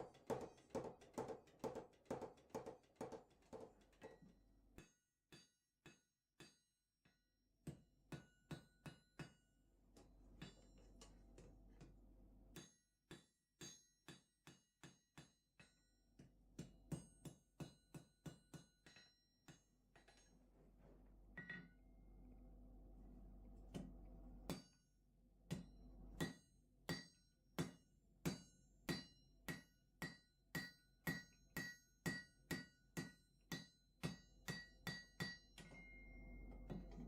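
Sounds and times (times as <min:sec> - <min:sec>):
hammer striking anvil: 0:25.5 - 0:37.0.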